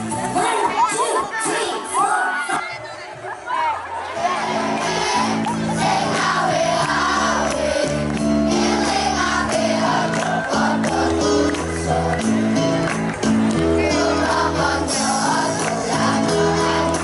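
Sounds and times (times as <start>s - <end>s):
voices singing: 4.2s - 12.8s, 13.6s - 17.0s
held chord accompaniment: 4.6s - 17.0s.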